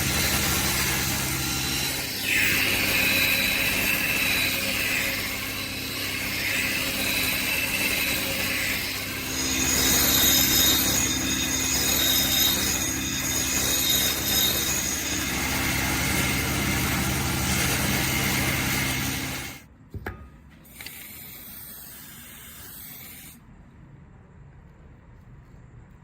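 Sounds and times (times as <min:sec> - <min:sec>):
workshop machine humming and rattling: 0:00.0 - 0:19.7.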